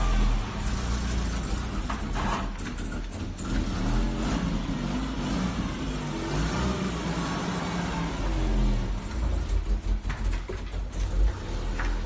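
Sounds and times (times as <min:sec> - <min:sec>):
car engine revving: 0:00.0 - 0:02.6, 0:03.2 - 0:10.2.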